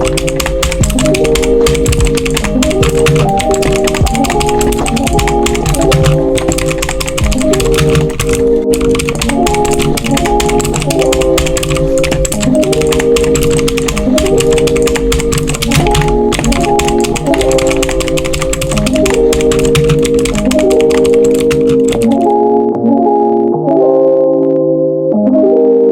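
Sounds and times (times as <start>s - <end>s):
mechanical keyboard typing: 0.0s - 22.3s
organ-like chords music: 0.0s - 25.9s.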